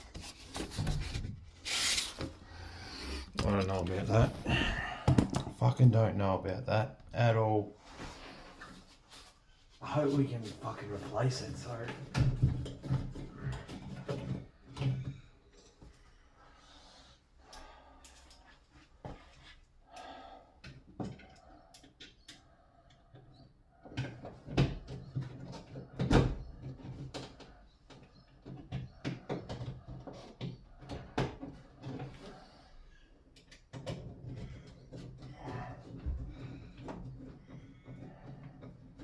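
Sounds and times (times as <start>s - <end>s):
knocks and rattles of shower panels: 0.0s - 2.8s, 8.6s - 16.1s, 23.1s - 39.0s.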